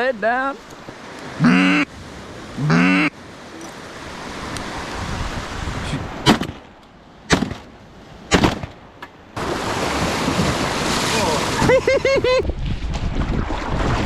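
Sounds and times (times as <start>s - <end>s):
surf: 0.0s - 8.8s, 9.4s - 14.0s
wind: 0.0s - 14.0s
shotgun shots: 7.3s - 7.7s, 8.3s - 8.8s.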